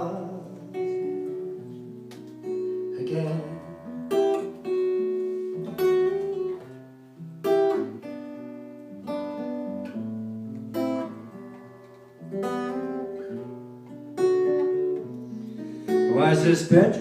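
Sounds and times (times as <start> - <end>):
acoustic guitar strumming chords: 0.0 - 17.0.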